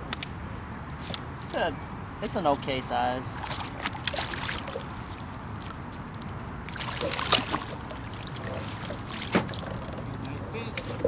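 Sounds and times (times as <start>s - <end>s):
water sloshing and trickling: 3.0s - 11.0s
water splashes: 3.2s - 11.0s.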